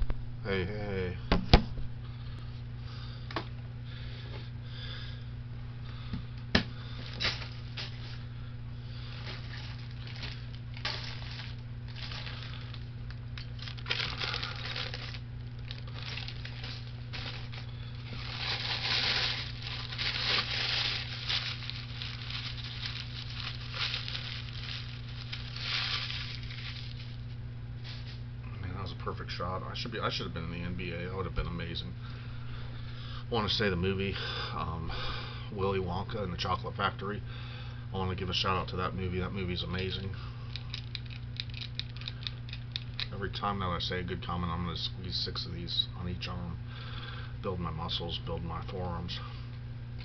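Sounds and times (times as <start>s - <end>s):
steady low hum: 0.0s - 50.0s
snack bag crinkling: 9.1s - 27.4s, 40.5s - 43.2s.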